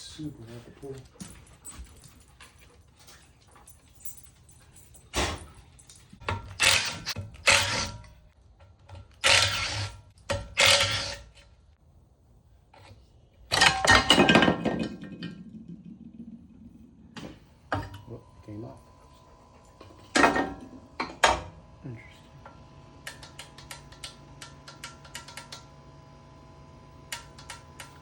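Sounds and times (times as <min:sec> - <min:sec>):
metal tools clattering and scraping: 0:00.2 - 0:07.7, 0:12.8 - 0:16.0, 0:19.1 - 0:21.4.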